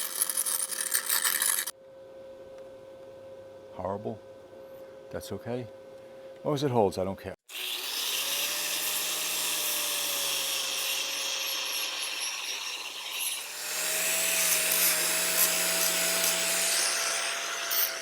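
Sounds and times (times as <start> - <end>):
angle grinder on steel: 0.0 - 1.7, 7.5 - 18.0.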